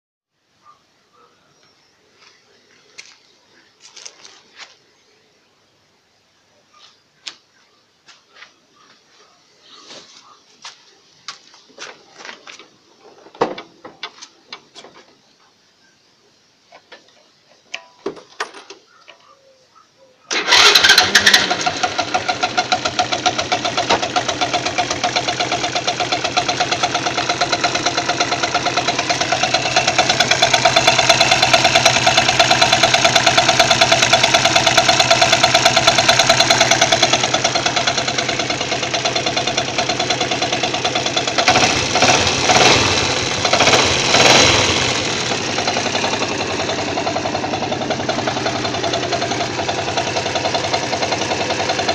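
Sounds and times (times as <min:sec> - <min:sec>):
engine running with knocking: 0:20.5 - 0:51.9.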